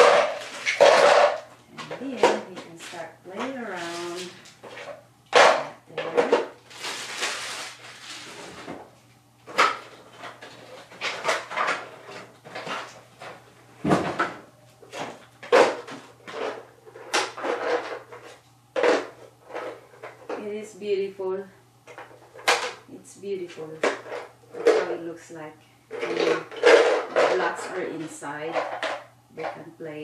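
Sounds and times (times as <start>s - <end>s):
rustling: 6.6s - 8.9s.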